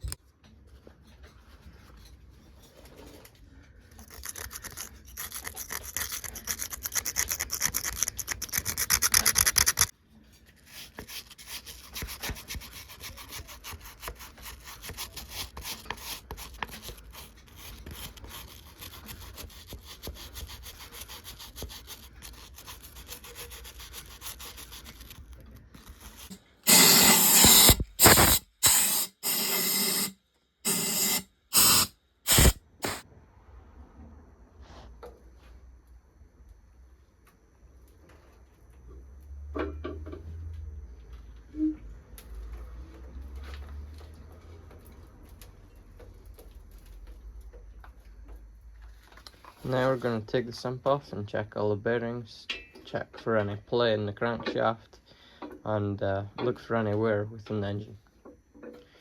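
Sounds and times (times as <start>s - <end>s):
loud noisy bursts: 26.7s - 30.1s, 30.7s - 33.0s.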